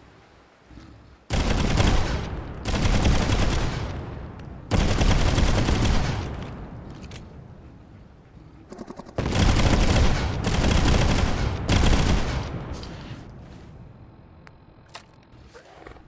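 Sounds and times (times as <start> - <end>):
pistol rapid shots: 1.3 - 4.0, 4.7 - 6.4, 8.7 - 12.5.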